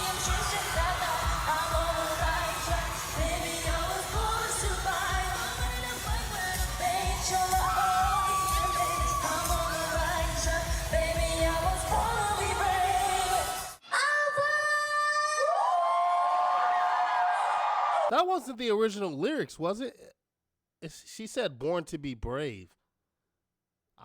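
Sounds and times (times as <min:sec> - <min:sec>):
pop backing track with bass beat: 0:00.0 - 0:13.8
woman singing live: 0:00.0 - 0:13.8.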